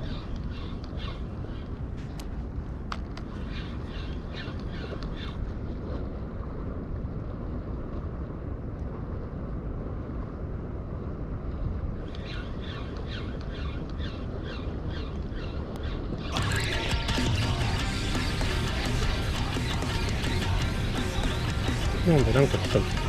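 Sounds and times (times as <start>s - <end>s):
music: 16.4s - 23.0s.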